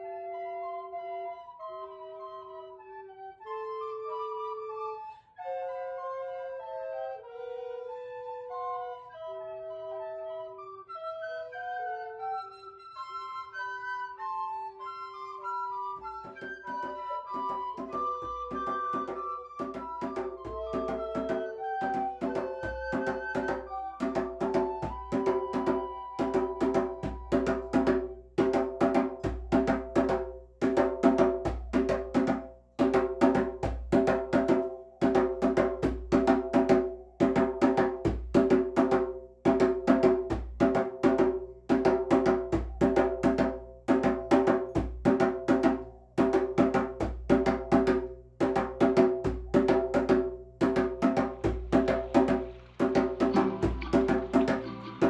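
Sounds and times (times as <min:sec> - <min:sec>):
wood-block-like percussion melody: 0:16.0 - 0:55.0.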